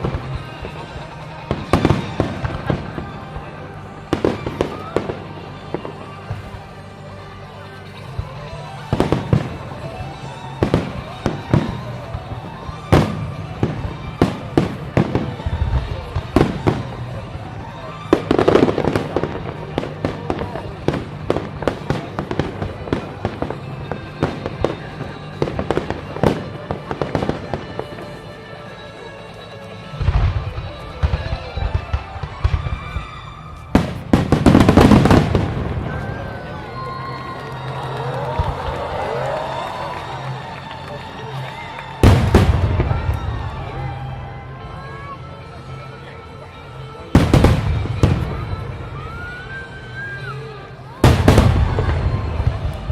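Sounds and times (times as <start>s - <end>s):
fireworks booming: 0.0s - 6.6s, 30.0s - 36.8s, 42.0s - 44.2s, 47.1s - 49.1s, 51.0s - 52.9s
firework crackling: 0.0s - 28.8s, 29.4s - 45.2s, 46.9s - 52.9s.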